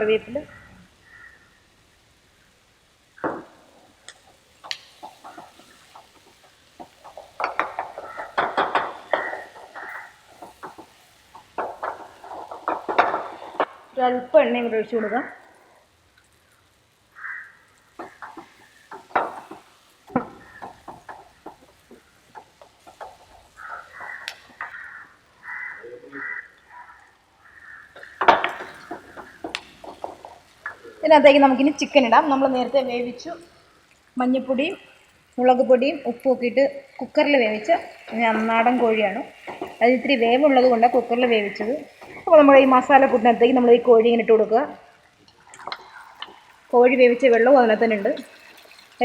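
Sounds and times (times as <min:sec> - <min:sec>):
crows cawing: 0:00.3 - 0:14.0, 0:14.6 - 0:31.0, 0:36.8 - 0:43.4, 0:45.4 - 0:46.7
spoon knocking and scraping a pan: 0:03.1 - 0:15.6, 0:17.2 - 0:25.6, 0:27.7 - 0:34.8, 0:35.4 - 0:44.7
utensil clinking on a pan: 0:03.3 - 0:13.8.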